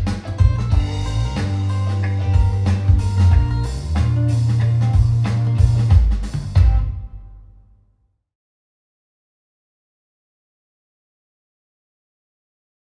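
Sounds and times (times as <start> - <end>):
music with heavy bass and drums: 0.0 - 7.2.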